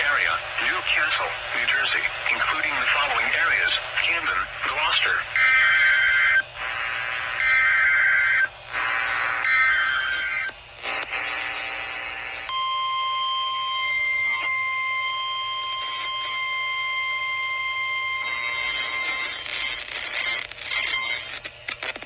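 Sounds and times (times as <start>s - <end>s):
steady alarm tone: 7.4s - 10.6s, 12.5s - 21.2s.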